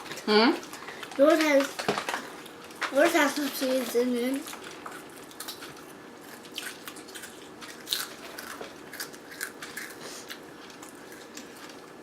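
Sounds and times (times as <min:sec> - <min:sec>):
crunchy snack chewing: 0:04.4 - 0:12.0.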